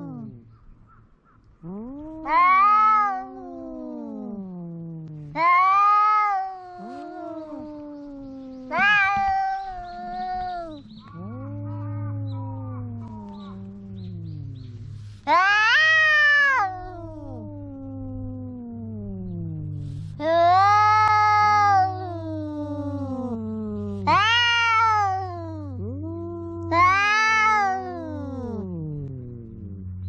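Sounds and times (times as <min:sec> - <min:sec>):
cat meowing loudly: 0:02.0 - 0:04.2, 0:05.3 - 0:13.9, 0:15.3 - 0:18.1, 0:20.2 - 0:23.3, 0:24.0 - 0:28.6.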